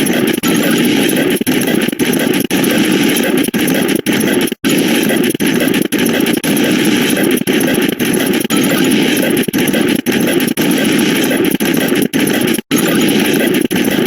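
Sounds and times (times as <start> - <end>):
sound effect clips: 6.2 - 14.0.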